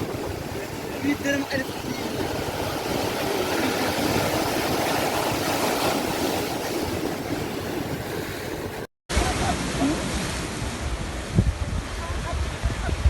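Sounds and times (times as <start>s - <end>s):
sea waves on shore: 0.0s - 13.0s.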